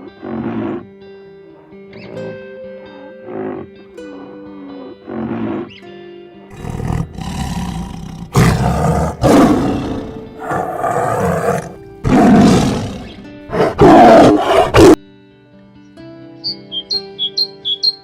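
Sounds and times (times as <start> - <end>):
background music: 0.0 - 18.0
large animal roaring: 6.5 - 15.0.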